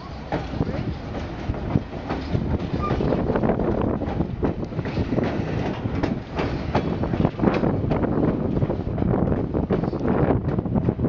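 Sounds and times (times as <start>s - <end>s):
train cars rumbling: 0.0s - 11.0s
wheels clicking over rails: 0.0s - 11.0s.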